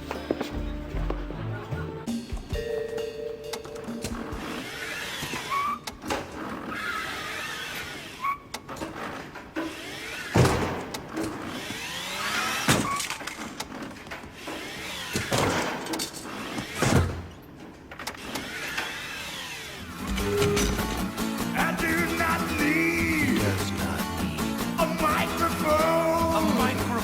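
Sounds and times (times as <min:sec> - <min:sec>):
mechanical noise: 0:03.6 - 0:27.0
whining pitch glides: 0:19.8 - 0:21.3
sharp hits: 0:19.8 - 0:26.0.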